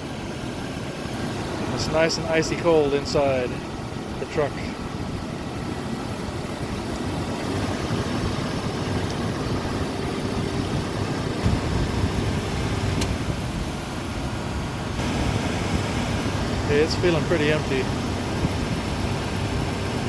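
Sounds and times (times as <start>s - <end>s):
air conditioning compressor running: 0.0s - 20.0s
car engine idling: 0.0s - 20.0s
sharp click: 13.0s - 13.2s.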